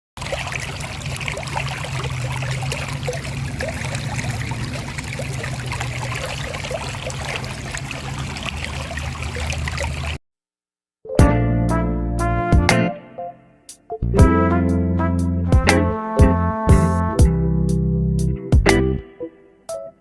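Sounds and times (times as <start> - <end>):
small waterfall splashing: 0.2 - 10.2.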